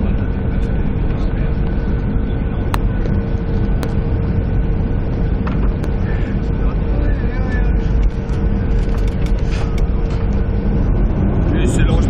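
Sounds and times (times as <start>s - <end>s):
jet engine rumble in cabin: 0.0s - 12.0s
sharp clicks or rattles: 8.3s - 9.9s.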